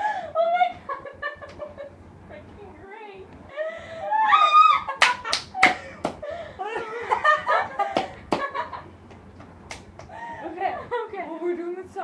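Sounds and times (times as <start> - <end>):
laughter: 0.7 - 2.0, 4.7 - 8.9
sharp smacks: 9.7 - 10.1.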